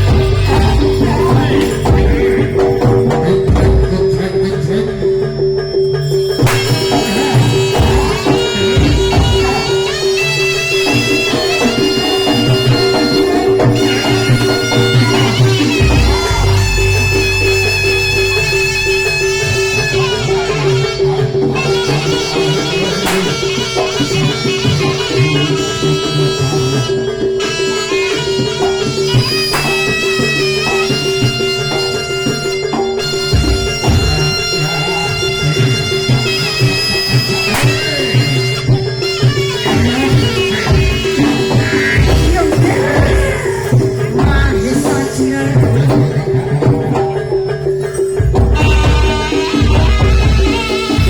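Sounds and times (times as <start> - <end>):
drumming: 0.0 - 51.0
shrill reedy wind instrument: 0.0 - 51.0
steady low drone: 15.2 - 24.0.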